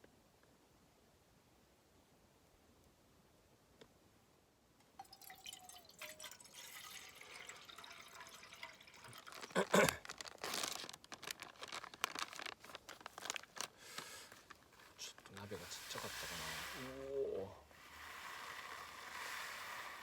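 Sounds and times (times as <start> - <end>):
water pouring into a pot: 4.8 - 11.4, 15.6 - 20.0
small clicks and rattles: 8.9 - 15.4.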